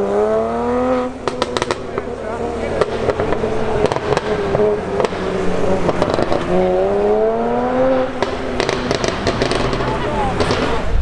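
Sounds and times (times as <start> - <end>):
car engine revving: 0.0 - 11.0
exhaust popping and crackling: 0.0 - 11.0.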